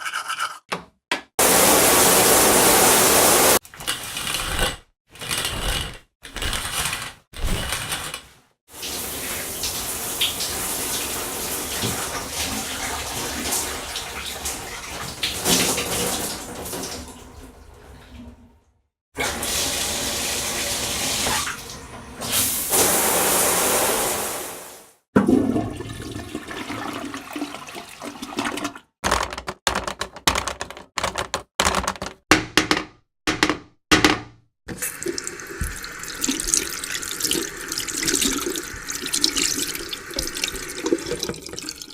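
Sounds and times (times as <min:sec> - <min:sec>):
rushing water: 0:34.9 - 0:41.9.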